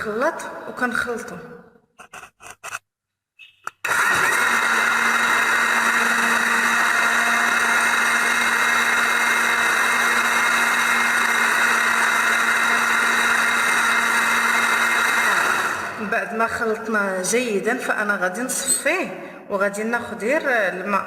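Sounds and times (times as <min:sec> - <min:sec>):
electric blender running: 0:03.8 - 0:16.1.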